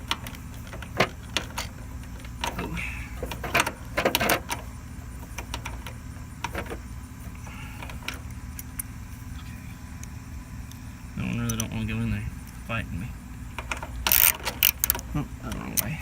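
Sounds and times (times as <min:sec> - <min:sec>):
metallic clicks and rattles of tools: 0:00.0 - 0:06.8, 0:13.6 - 0:16.0
steady low rumble: 0:00.0 - 0:16.0.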